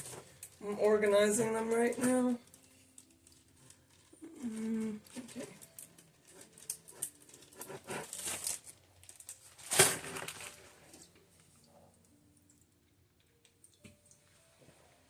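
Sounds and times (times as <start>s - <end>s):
small items rustling and clicking: 0.0s - 11.6s.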